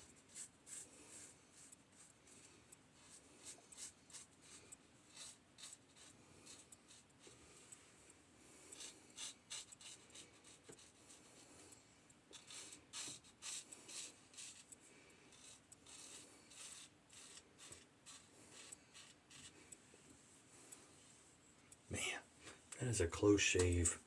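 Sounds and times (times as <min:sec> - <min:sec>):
razor scraping stubble: 0:12.4 - 0:19.7.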